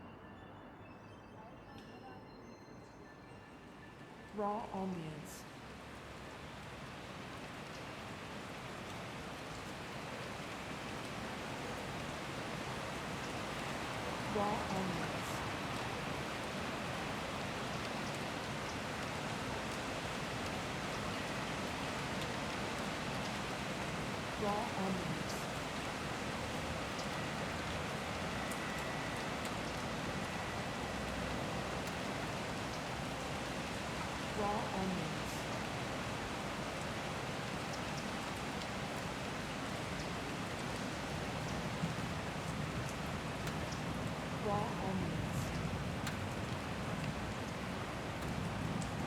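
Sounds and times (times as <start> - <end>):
faint high whine: 0.0 - 5.6
city street noise: 0.0 - 49.0
light ticks: 42.4 - 43.9, 45.5 - 47.6.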